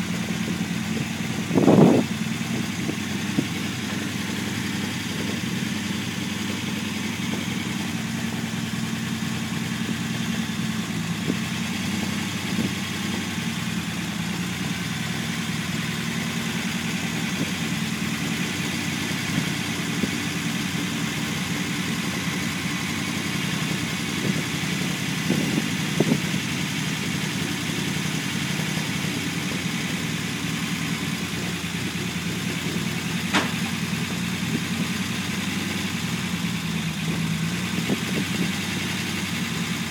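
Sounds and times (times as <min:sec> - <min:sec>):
petrol engine idling: 0:00.0 - 0:39.9
sharp click: 0:33.3 - 0:33.7.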